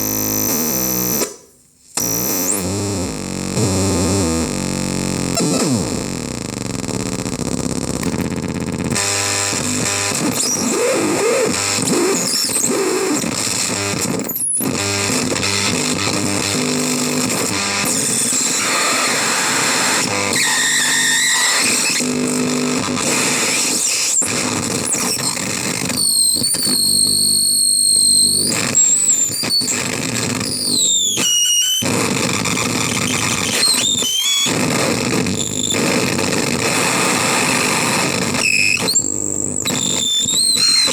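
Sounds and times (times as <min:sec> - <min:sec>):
distorted synth noise: 0:02.0 - 0:12.2.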